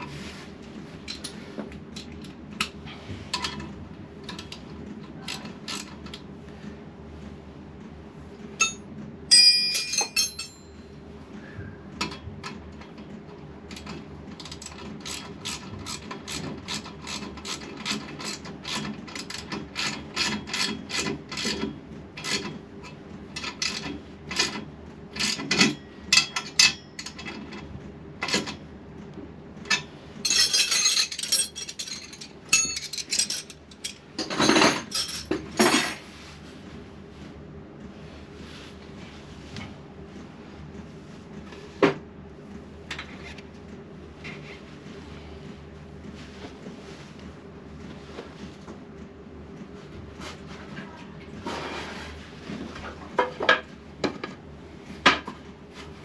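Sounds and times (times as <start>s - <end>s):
metallic clattering: 30.3s - 35.3s.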